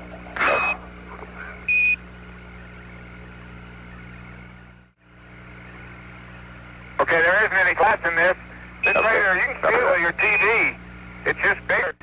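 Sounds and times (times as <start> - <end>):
radio hiss and hum: 0.0 - 12.0
short radio beep: 0.4 - 0.8, 8.8 - 9.2, 10.2 - 10.7.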